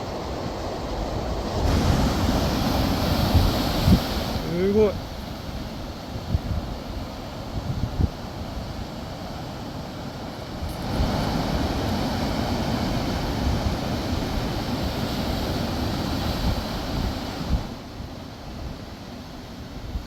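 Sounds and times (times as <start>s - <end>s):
wind buffeting microphone: 0.0s - 20.0s.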